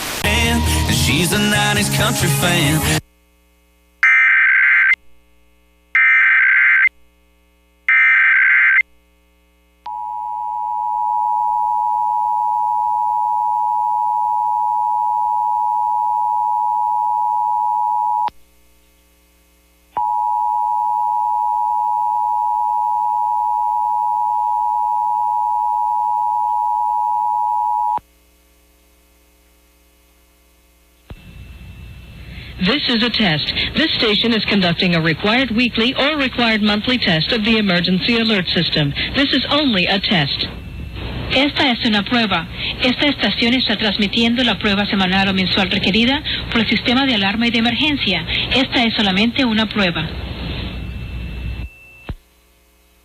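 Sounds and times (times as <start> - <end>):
digital data bursts screeching: 4.0 - 5.0, 6.0 - 6.9, 7.9 - 8.8.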